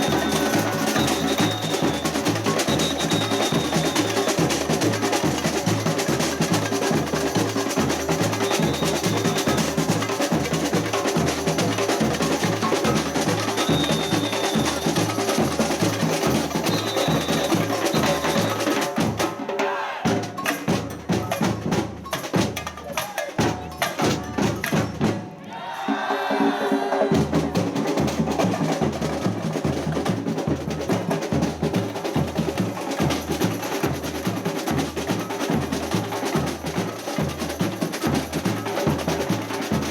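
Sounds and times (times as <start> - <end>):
high whistle tones: 0.0 - 4.6, 8.4 - 9.6, 13.6 - 15.3, 16.4 - 18.7
rattling snare drums: 0.0 - 39.9.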